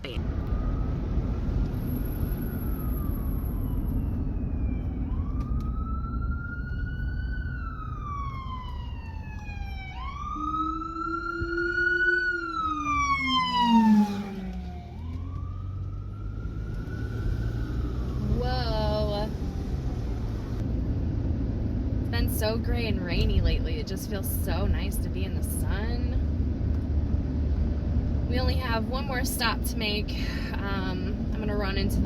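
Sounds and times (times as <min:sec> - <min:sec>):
emergency vehicle siren wailing: 0:00.0 - 0:21.0
low road rumble: 0:00.0 - 0:32.0.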